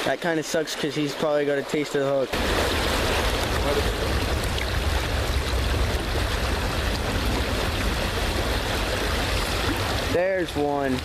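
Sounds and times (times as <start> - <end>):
creek water rushing: 0.0 - 11.0
strong low rumble: 2.4 - 10.2.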